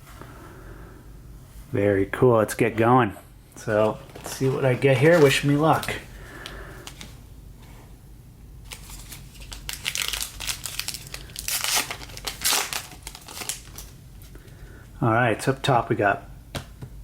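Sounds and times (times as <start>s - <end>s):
wrapper rustling and tearing: 4.1s - 6.1s, 8.7s - 14.3s.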